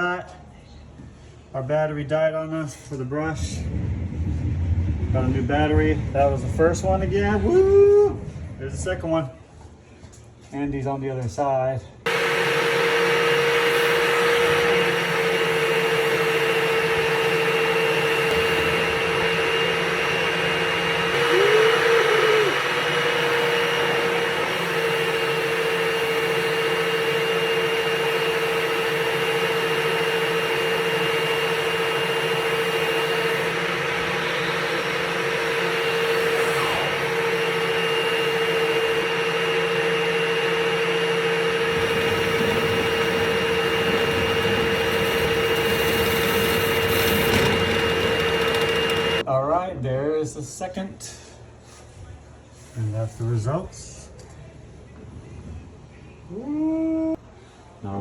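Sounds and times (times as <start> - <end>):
vacuum motor whining: 12.1 - 49.3.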